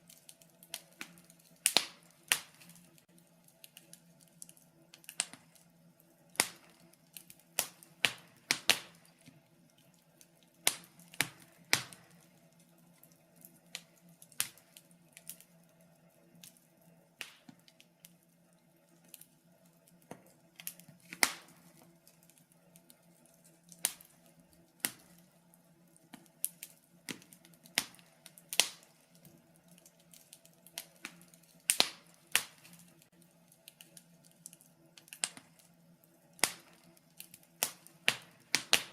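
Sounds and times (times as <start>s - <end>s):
wood fire crackling: 0.0s - 38.9s.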